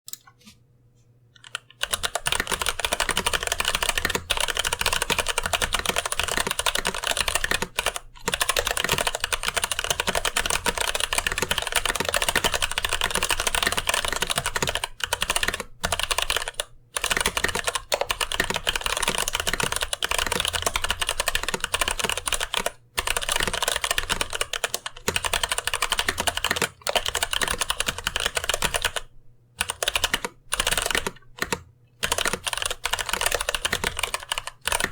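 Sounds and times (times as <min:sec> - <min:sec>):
typing on mechanical keyboard: 0:01.4 - 0:34.9.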